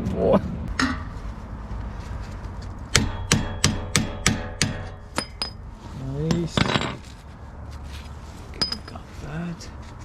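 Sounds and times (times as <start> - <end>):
hammer striking steel pipe: 2.9 - 5.6.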